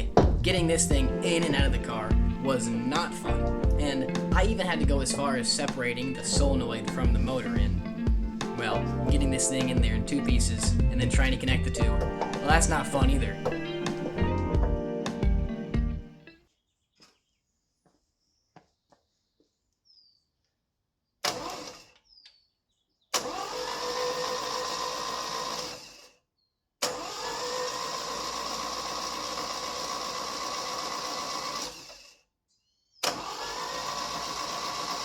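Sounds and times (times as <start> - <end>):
starter motor cranking engine: 21.2 - 22.0, 23.1 - 26.2, 26.8 - 32.2, 33.0 - 35.0.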